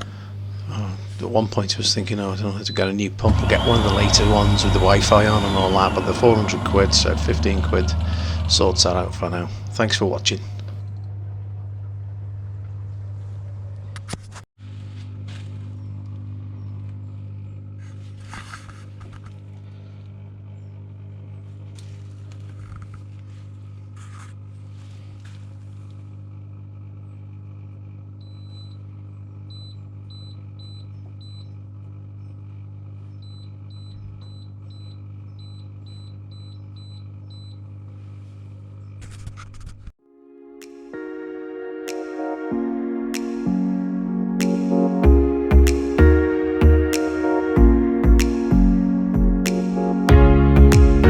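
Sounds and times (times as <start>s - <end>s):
pump humming: 3.2s - 10.7s.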